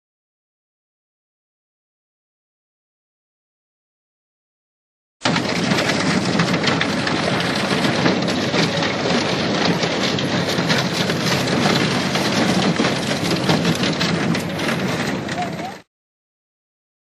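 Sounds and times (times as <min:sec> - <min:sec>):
boat motor running: 0:05.2 - 0:15.8.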